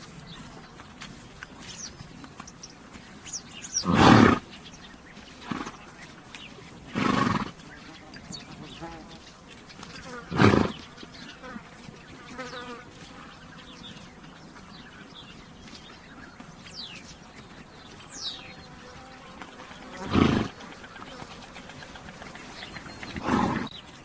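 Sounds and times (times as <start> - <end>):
horse snorting: 3.6 - 4.6, 5.4 - 6.0, 6.7 - 8.0, 10.0 - 10.9, 19.8 - 23.8
flies buzzing: 6.9 - 14.3, 16.2 - 24.0.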